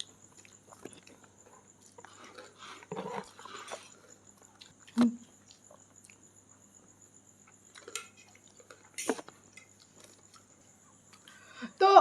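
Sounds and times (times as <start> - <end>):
soft crunching and rustling: 0.0 - 6.3
eating sounds: 0.0 - 6.6.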